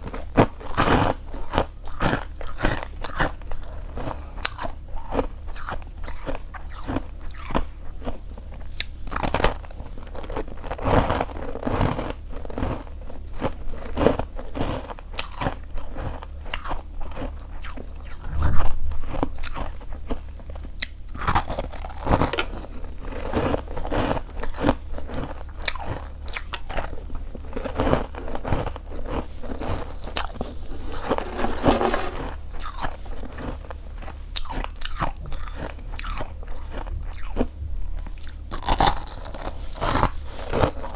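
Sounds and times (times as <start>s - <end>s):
biting and chewing icy frost: 34.3s - 37.5s.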